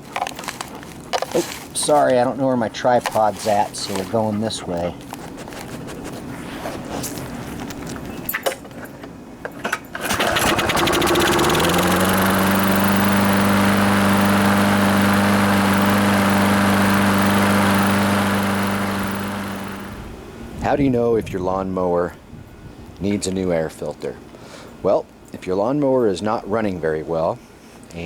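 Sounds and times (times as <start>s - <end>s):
lawnmower engine starting and running: 3.0s - 4.6s, 9.7s - 20.5s.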